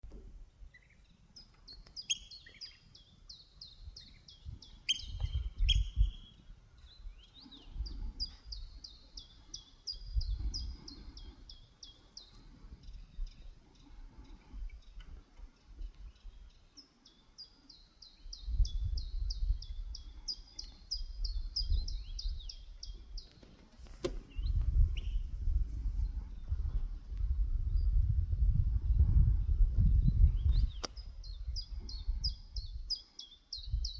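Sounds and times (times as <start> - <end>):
sandpiper calling: 2.0 - 2.8, 4.0 - 6.4.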